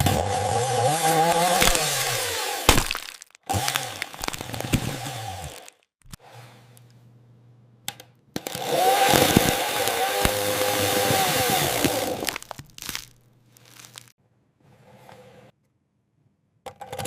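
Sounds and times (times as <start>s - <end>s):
chainsaw motor cutting: 0.0s - 5.9s, 8.4s - 12.6s.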